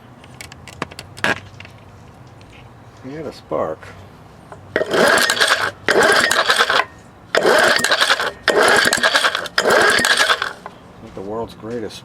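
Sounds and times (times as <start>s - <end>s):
outboard motor cranked by hand: 4.7s - 10.7s
clicking rattle: 4.8s - 10.7s.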